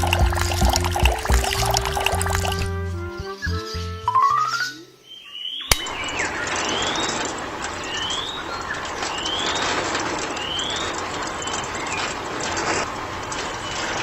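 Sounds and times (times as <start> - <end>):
sharp click: 5.7 - 6.3.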